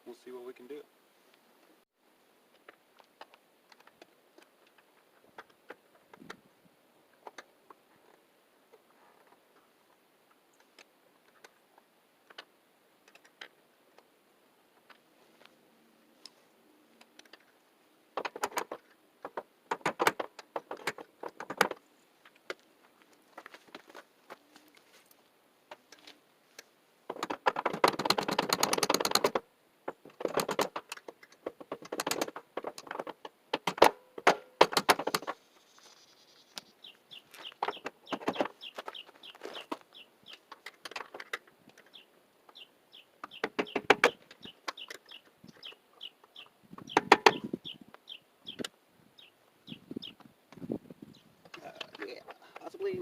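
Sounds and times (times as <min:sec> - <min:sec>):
bird rapid clattering: 0:18.2 - 0:21.8, 0:27.1 - 0:48.7.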